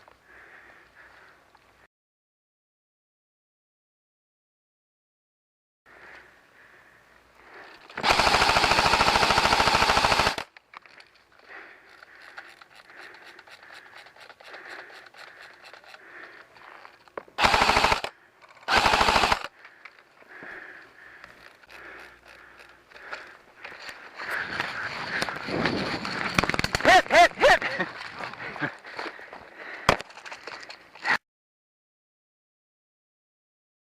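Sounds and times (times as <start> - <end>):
airsoft rifle firing bursts: 8.0 - 10.5, 17.4 - 18.1, 18.7 - 19.5.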